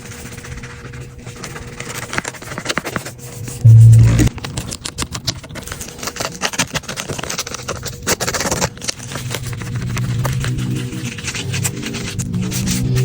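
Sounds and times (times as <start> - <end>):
low backing music: 3.6 - 4.3.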